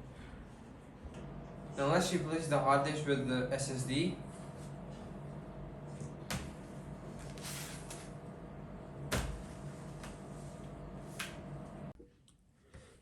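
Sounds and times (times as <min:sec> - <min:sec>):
steady low hum: 0:00.0 - 0:12.8.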